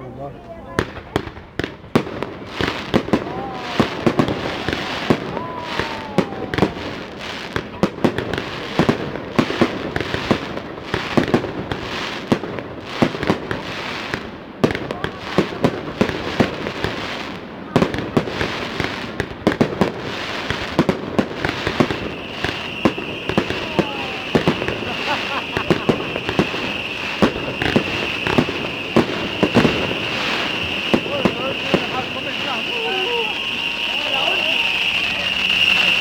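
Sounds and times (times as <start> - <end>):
fireworks bangs: 0.4 - 36.0
fireworks crackle: 0.5 - 36.0
falling whistle: 2.6 - 7.6, 20.4 - 36.0.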